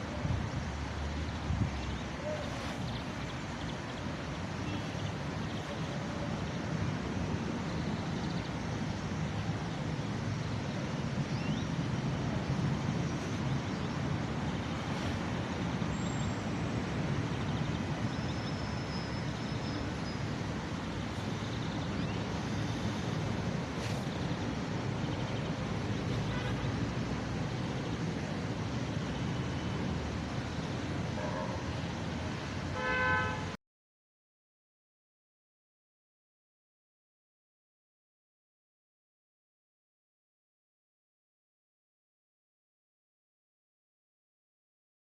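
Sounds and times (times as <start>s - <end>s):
city traffic rumble: 0.0s - 33.6s.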